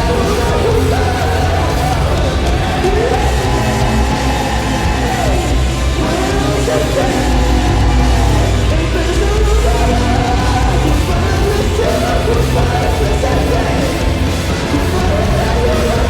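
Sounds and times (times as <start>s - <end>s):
heavy rock band playing: 0.0s - 16.0s.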